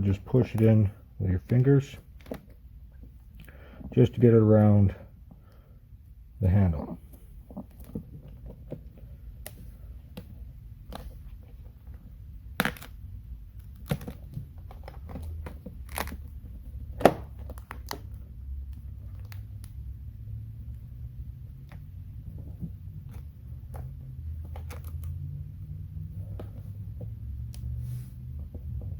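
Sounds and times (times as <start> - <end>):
vinyl film crinkling: 10.8 - 19.8.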